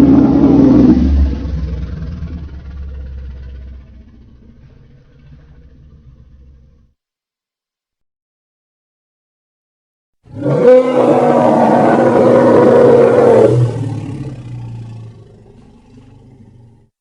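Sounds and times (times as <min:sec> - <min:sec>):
dinosaur roar: 0:00.0 - 0:06.9, 0:10.3 - 0:16.9.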